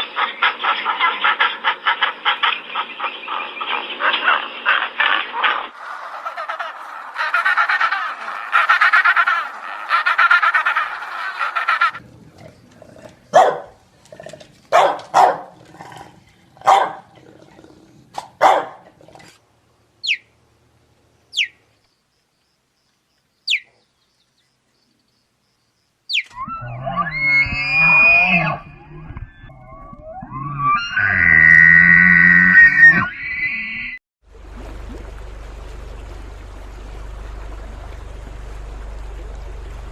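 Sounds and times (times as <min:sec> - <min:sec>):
animals chattering: 0:00.0 - 0:13.6
animal barks: 0:00.1 - 0:12.0, 0:13.0 - 0:13.8, 0:14.7 - 0:15.6, 0:16.6 - 0:17.2, 0:18.1 - 0:19.0.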